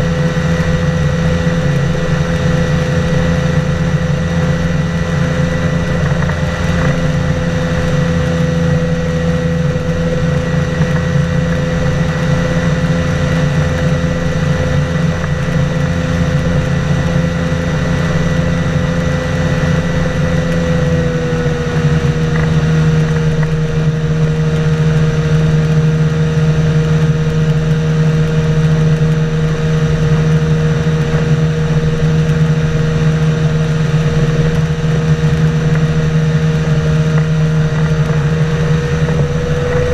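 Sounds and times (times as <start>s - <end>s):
boat engine running: 0.0s - 39.9s.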